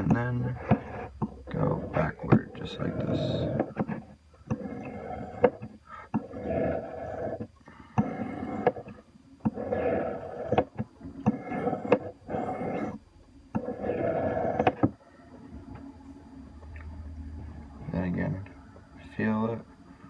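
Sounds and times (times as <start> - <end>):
knife scraping on sharpening stone: 11.3 - 13.0.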